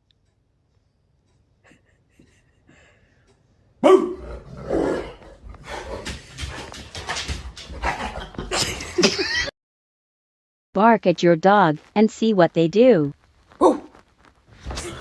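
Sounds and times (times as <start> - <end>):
dog barking and growling: 3.8 - 8.8, 13.6 - 14.0.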